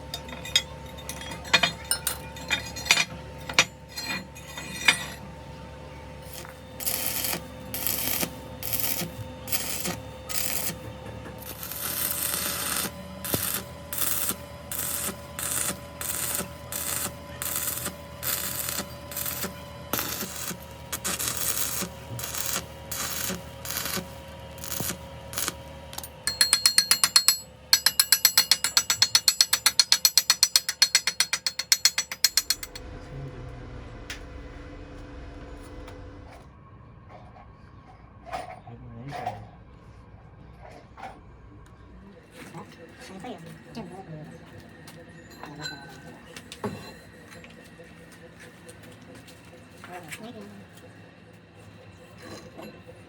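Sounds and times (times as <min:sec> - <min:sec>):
rhythmic metal scraping: 0:00.0 - 0:36.6
machine humming: 0:00.0 - 0:38.0
fast mechanical ratchet clicking: 0:26.2 - 0:32.8.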